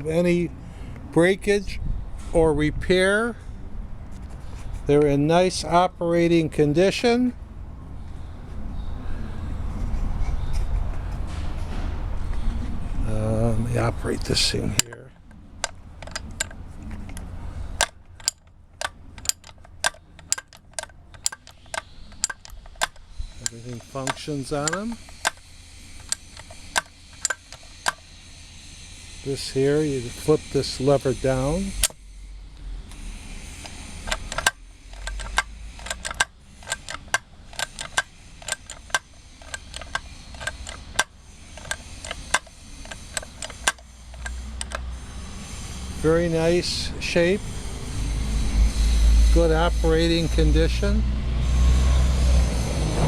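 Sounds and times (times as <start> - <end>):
ratchet jack clicking: 13.8 - 32.0, 32.9 - 52.6.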